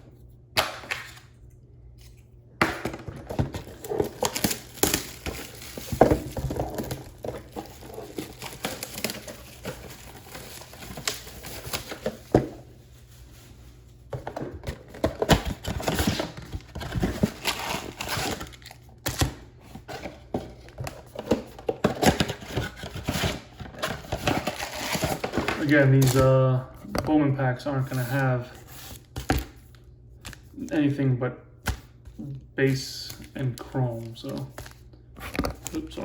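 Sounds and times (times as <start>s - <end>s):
wrapping crinkling and tearing: 3.5s - 13.9s, 14.9s - 19.4s, 22.0s - 26.4s, 32.9s - 36.0s.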